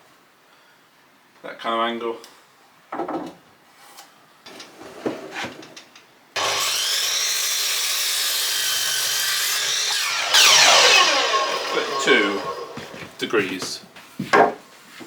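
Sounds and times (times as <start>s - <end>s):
electric saw cutting timber: 6.4s - 13.2s.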